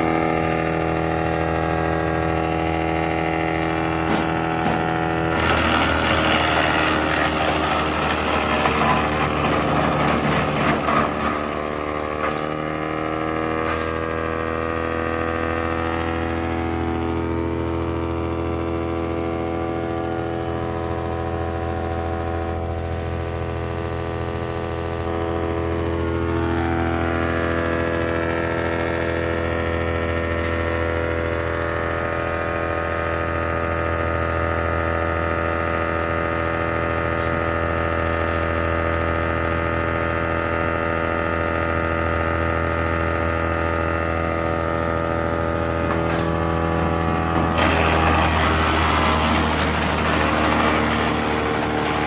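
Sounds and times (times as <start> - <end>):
wood chipper motor hum: 0.0 - 52.0
rough crackling of chipping: 3.9 - 14.3, 45.6 - 52.0.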